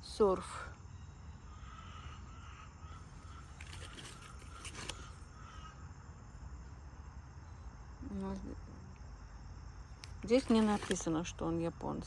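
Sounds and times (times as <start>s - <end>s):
insects chirring: 0.0s - 12.0s
brief rustles: 3.2s - 5.2s, 10.2s - 11.2s.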